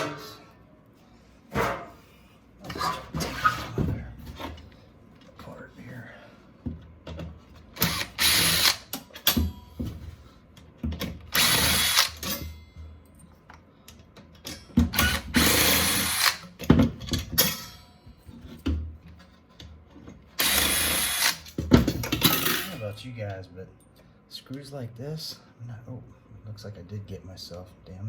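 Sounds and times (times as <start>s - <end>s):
cordless drill driving screws: 7.8s - 8.9s, 11.3s - 12.2s, 15.0s - 16.4s, 20.4s - 21.5s.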